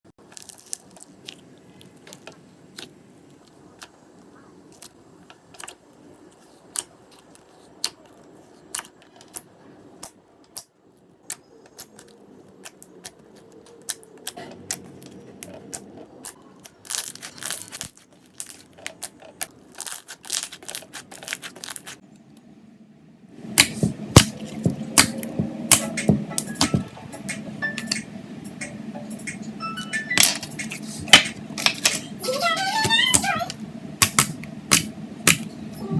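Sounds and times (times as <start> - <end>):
slime squished clicking and popping: 34.0 - 35.5.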